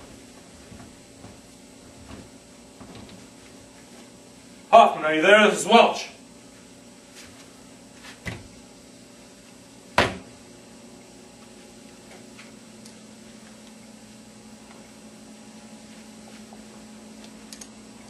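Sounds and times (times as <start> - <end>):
low steady hum: 0.0 - 18.0
soft clicks: 17.2 - 17.7.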